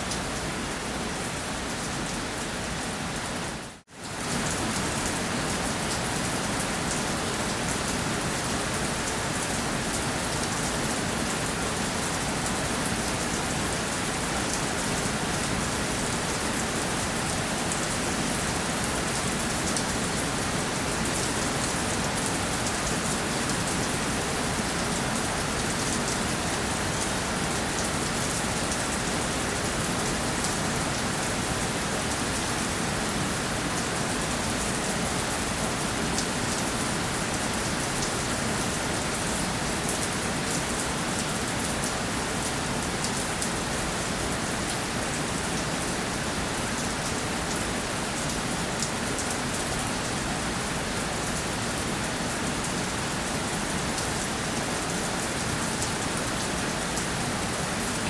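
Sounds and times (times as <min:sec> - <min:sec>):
steady rainfall: 0:00.0 - 0:58.0.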